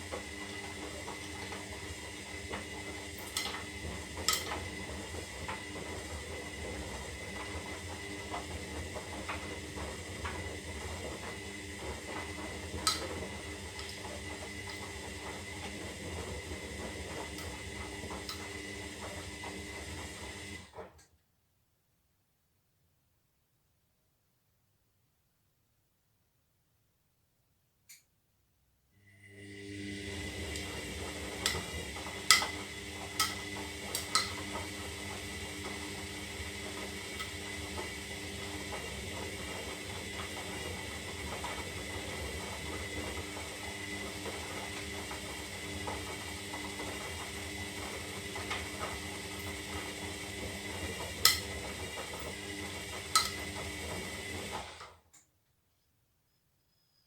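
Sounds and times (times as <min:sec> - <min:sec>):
washing machine motor whining: 0:00.0 - 0:20.9, 0:29.1 - 0:55.0.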